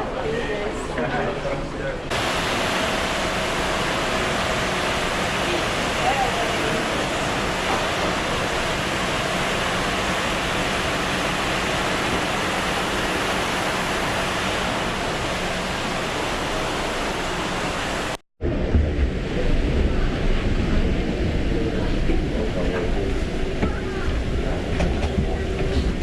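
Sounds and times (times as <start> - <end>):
deep cabin rumble: 2.0 - 26.0
airliner cabin engine hiss: 2.1 - 18.2.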